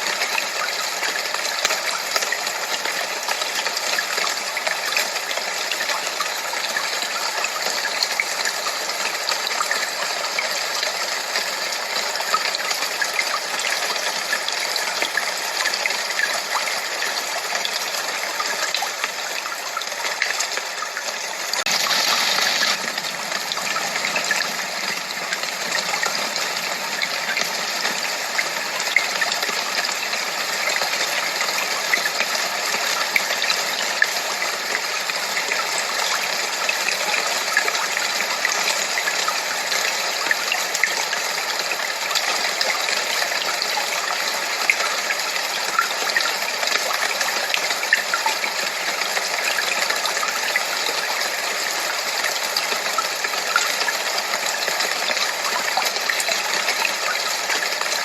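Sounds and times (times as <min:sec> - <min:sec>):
rushing white noise: 0:21.6 - 0:32.0.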